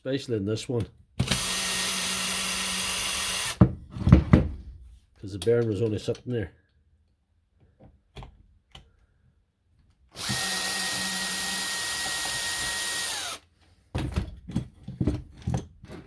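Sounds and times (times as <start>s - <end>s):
cordless drill running: 1.2s - 3.6s, 10.2s - 13.5s.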